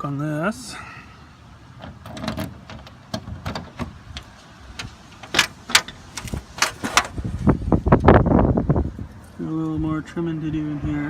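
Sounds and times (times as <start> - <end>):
lock clicks and knocks: 1.8 - 7.1.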